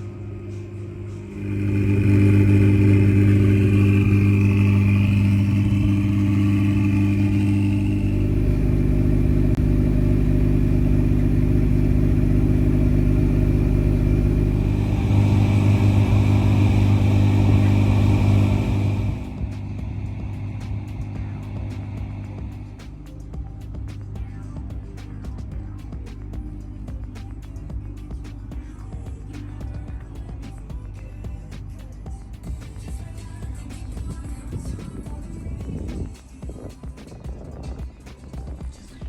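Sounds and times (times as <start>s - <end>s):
car engine revving: 0.0s - 24.2s.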